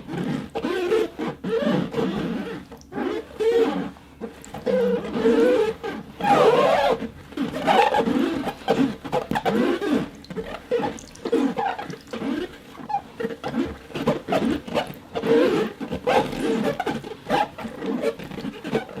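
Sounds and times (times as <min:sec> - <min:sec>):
fingers squeaking on rosin board: 0:00.0 - 0:19.0.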